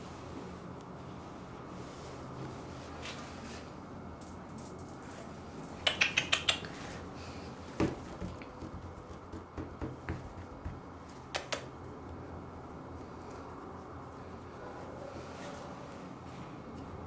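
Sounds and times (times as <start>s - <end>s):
sharp clicks: 5.8s - 6.7s, 11.3s - 11.7s
knocks: 7.8s - 11.5s.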